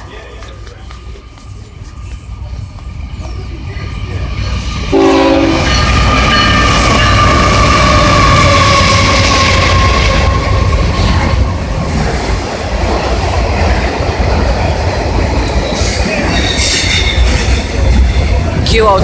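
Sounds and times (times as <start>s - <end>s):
train air horn: 4.9s - 6.0s
freight cars rumbling and clattering: 10.6s - 19.0s.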